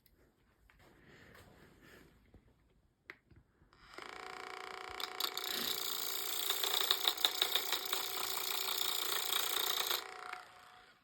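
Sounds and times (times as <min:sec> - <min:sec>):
massage gun motor whining: 0:03.8 - 0:11.0.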